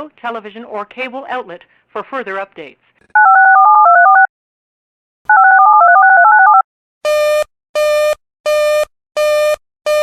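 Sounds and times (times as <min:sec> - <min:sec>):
touch-tone dialing: 0:03.2 - 0:04.3, 0:05.3 - 0:06.6.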